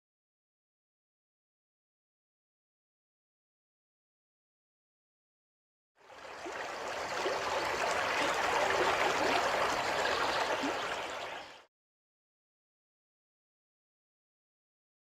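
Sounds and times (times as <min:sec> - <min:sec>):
running water gurgling: 0:06.0 - 0:11.7.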